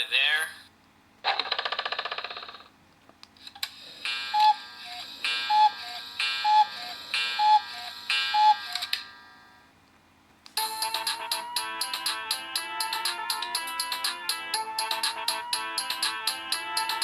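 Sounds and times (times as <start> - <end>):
electronic phone ringtone: 10.6 - 17.0.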